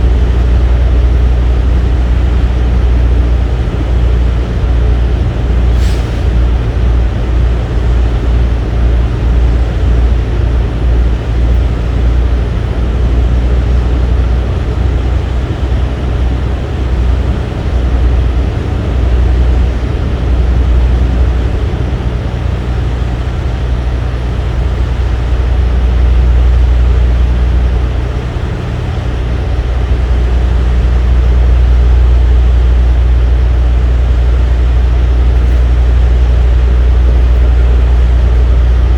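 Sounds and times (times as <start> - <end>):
large engine deep rumble: 0.0 - 38.9.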